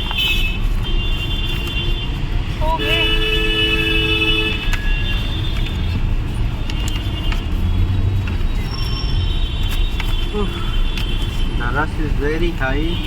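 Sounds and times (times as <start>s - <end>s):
car horn sounding: 0.0s - 5.9s
traffic engines rumbling: 0.0s - 13.0s.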